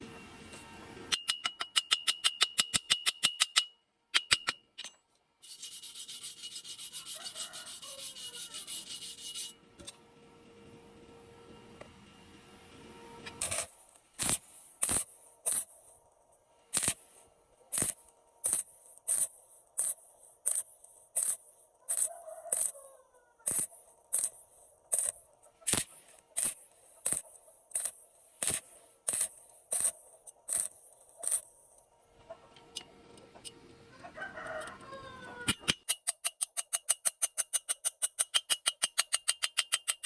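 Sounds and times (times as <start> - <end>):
welding arc hissing crackles: 13.4 - 16.1, 16.7 - 31.9.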